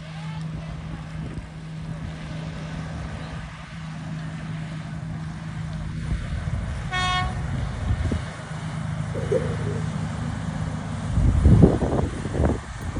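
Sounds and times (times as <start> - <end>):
wind rumbling on microphone: 0.7 - 2.3, 5.8 - 8.4, 9.1 - 10.0, 11.0 - 12.9
motorboat engine running: 9.1 - 11.0
brief high-pitched tone: 9.2 - 9.9.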